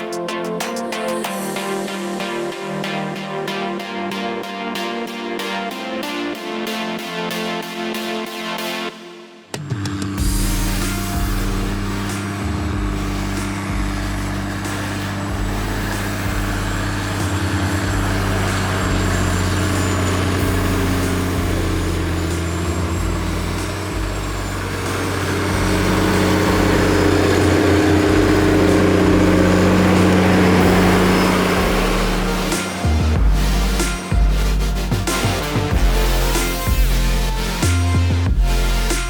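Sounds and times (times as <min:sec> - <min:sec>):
diesel engine under load: 0:10.2 - 0:35.5.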